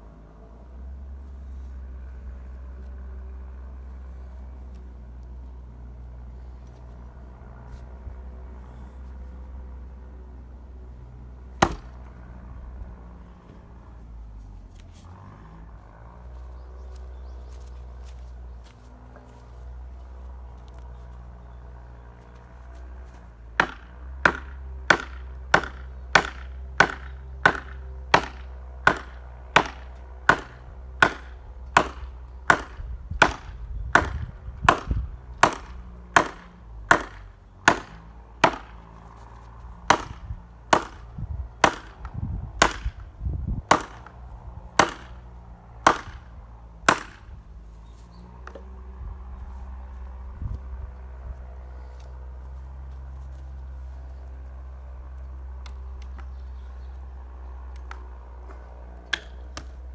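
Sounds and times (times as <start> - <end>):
axe chopping wood: 11.6 - 12.2, 23.1 - 47.4, 57.7 - 59.9.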